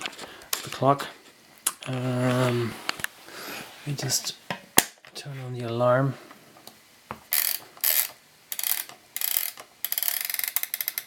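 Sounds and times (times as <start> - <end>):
clock mechanism clicking and ratcheting: 7.3 - 11.0.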